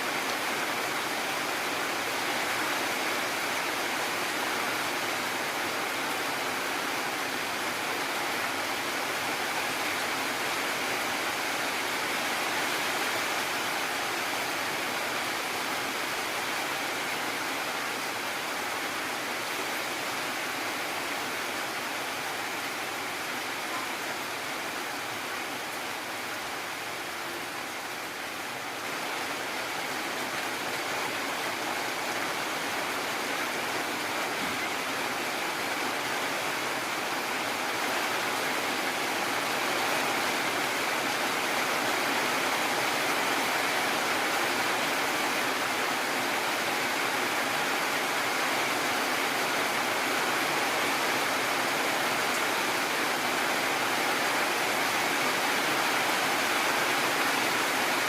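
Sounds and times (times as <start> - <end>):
heavy rain falling: 0.0 - 58.0.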